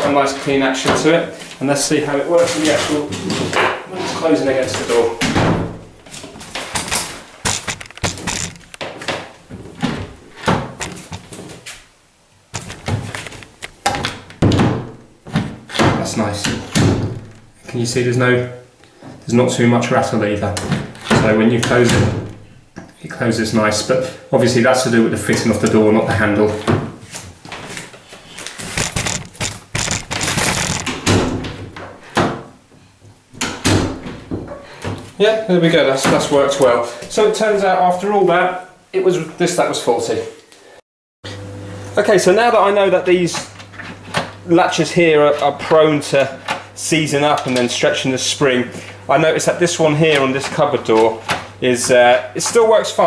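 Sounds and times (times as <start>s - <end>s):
door latch clicking and rattling: 6.8s - 8.8s, 28.8s - 31.6s.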